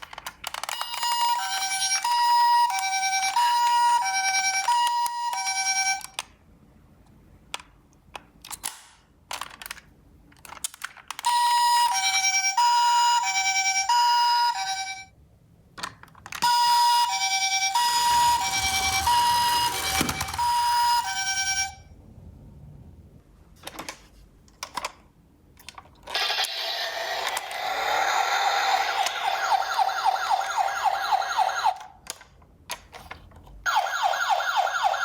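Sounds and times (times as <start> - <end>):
toy ambulance two-tone siren: 0.6 - 6.2, 11.2 - 15.1, 16.4 - 21.9, 26.2 - 31.9, 33.7 - 35.0.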